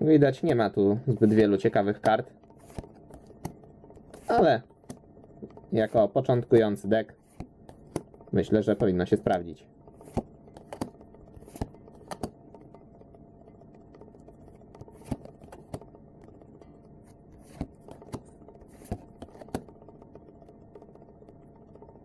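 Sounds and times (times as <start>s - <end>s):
faint background hum: 0.0s - 22.0s
card edges clicking and snapping: 1.2s - 5.0s, 7.2s - 8.1s, 10.0s - 12.4s, 14.4s - 15.9s, 17.0s - 19.7s.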